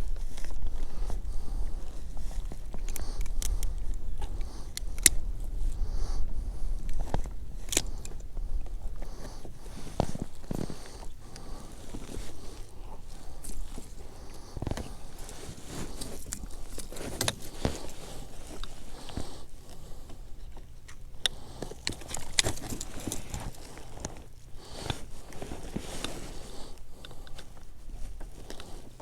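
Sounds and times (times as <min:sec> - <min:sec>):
fish clicking and rattling on kayak: 0:20.6 - 0:25.1.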